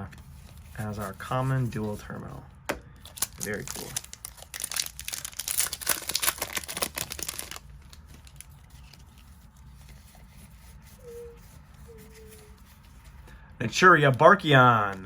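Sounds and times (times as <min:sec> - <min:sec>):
wrapper crinkling and tearing: 0:03.0 - 0:09.6.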